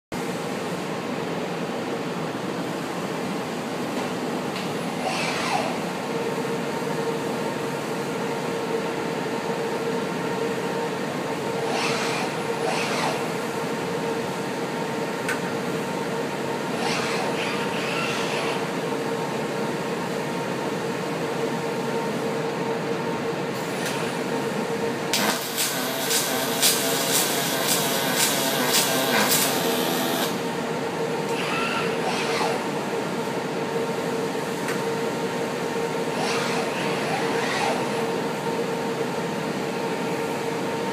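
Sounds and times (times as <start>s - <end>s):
machine shop hum: 0.1s - 40.9s
arc welder crackling: 25.1s - 30.4s.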